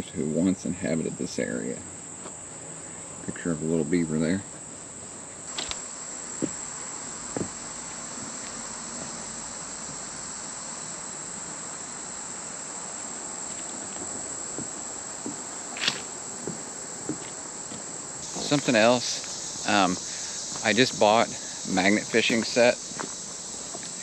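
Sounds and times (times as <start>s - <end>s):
insect chorus drone: 0.0s - 24.0s
soft knocks and scuffs: 6.4s - 6.6s, 7.3s - 9.2s, 13.5s - 19.3s.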